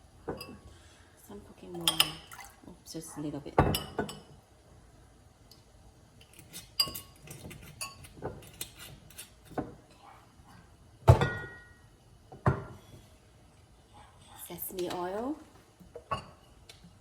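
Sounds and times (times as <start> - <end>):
dishes and utensils clinking: 6.3 - 9.8, 16.0 - 16.6.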